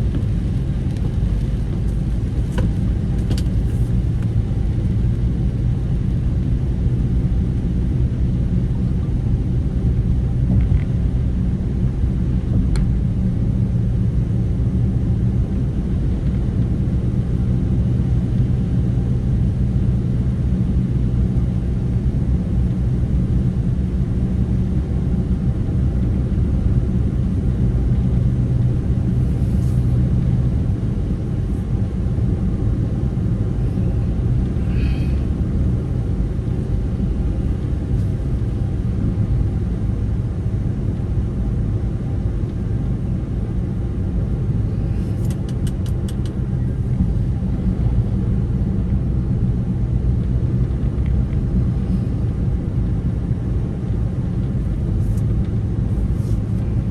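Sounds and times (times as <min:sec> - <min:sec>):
vehicle driving on road: 0:00.0 - 0:56.9.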